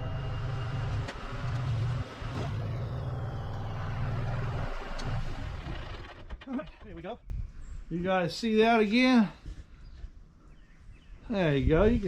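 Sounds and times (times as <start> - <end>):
tractor engine under load: 0.0 - 7.2.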